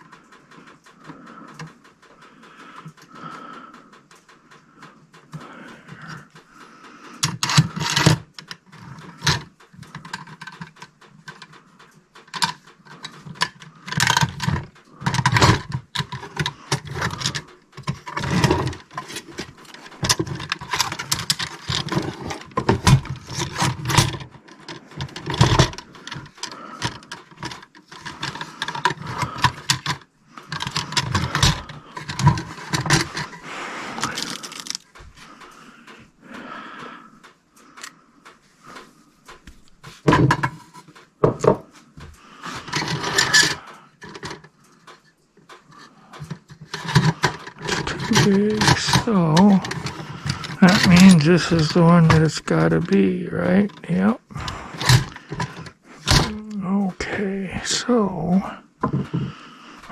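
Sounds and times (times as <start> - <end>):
metal tools clattering and clinking: 12.3 - 33.4, 42.5 - 44.5, 45.8 - 53.9.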